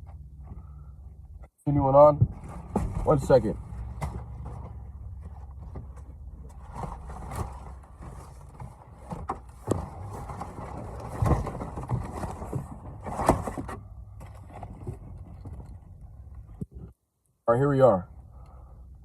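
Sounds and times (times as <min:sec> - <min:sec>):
steady low rumble: 0:00.0 - 0:19.0
handling clicks and rustles: 0:02.2 - 0:17.0.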